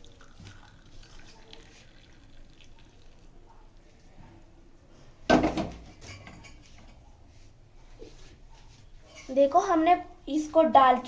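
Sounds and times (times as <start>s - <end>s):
metal kitchenware clatter: 5.3s - 7.0s.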